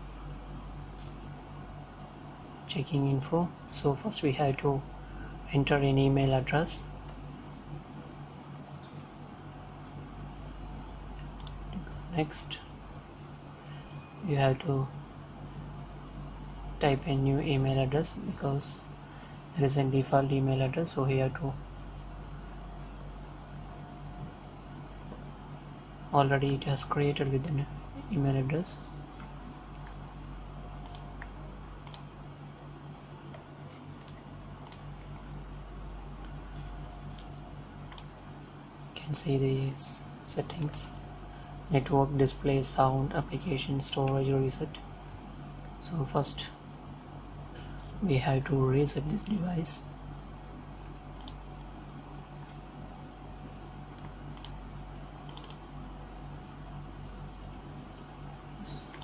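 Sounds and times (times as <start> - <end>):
low electrical hum: 0.0 - 59.0
computer mouse clicks: 11.2 - 11.6, 30.8 - 32.1, 34.0 - 34.9, 37.1 - 38.1, 51.2 - 52.6, 53.9 - 54.6, 55.2 - 55.6, 58.8 - 59.0.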